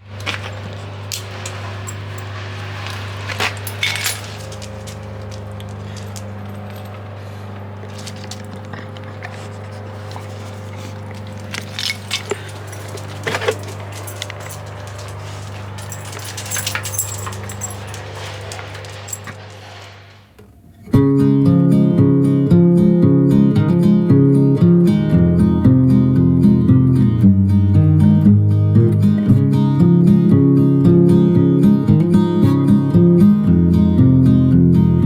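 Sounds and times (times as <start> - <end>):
small hard objects clinking: 0.1 - 20.0.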